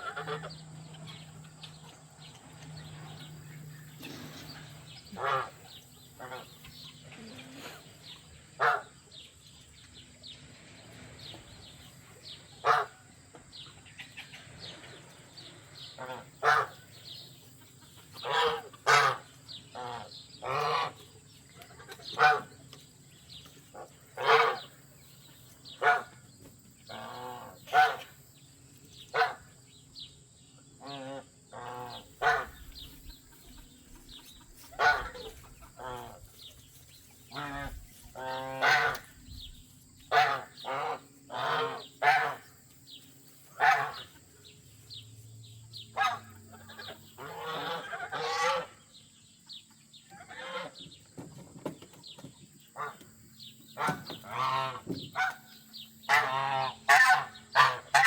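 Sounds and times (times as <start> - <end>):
geese honking: 0.0 - 7.9, 8.5 - 9.0, 12.3 - 15.1, 15.8 - 22.6, 23.7 - 26.2, 26.8 - 28.2, 29.1 - 29.6, 30.8 - 39.3, 40.0 - 42.6, 43.3 - 44.4, 45.9 - 48.9, 50.1 - 50.8, 52.8 - 58.0.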